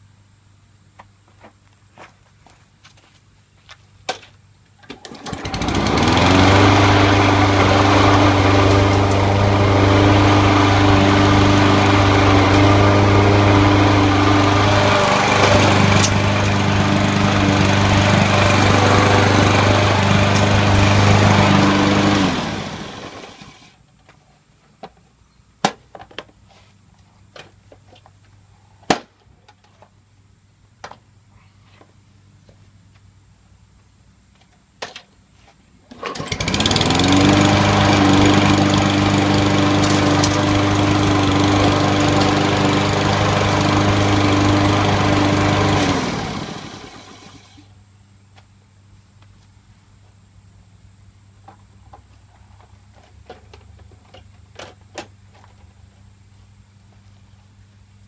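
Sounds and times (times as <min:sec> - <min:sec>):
lawn mower engine running: 0:05.0 - 0:23.8, 0:35.9 - 0:47.6.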